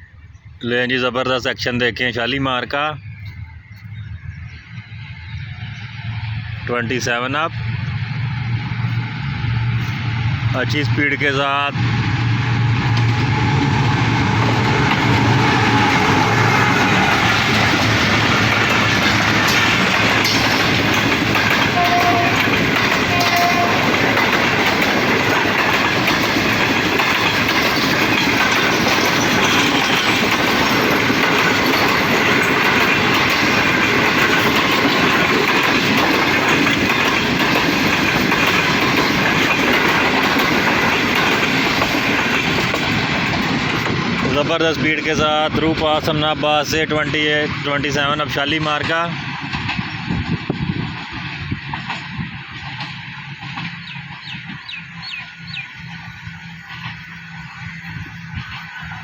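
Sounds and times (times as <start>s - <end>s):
train coaches rushing past: 0.0s - 59.0s
locomotive engine hum: 3.0s - 59.0s
wheel clatter on rails: 12.8s - 59.0s.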